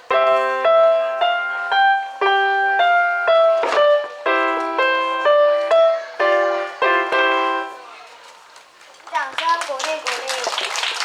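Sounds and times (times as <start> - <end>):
keyboard playing melody with chords: 0.0 - 7.8.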